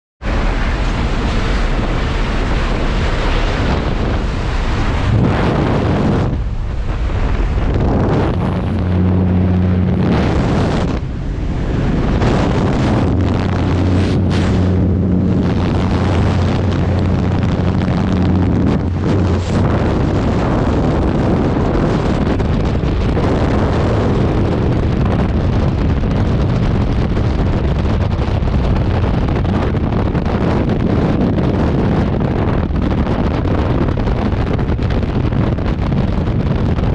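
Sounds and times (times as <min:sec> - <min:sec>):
low hum: 0:00.2 - 0:36.9
wind buffeting microphone: 0:00.2 - 0:36.9.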